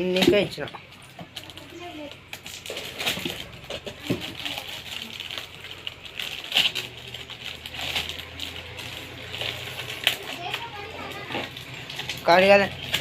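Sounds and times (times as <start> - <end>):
objects clicking and knocking: 0.0 - 13.0.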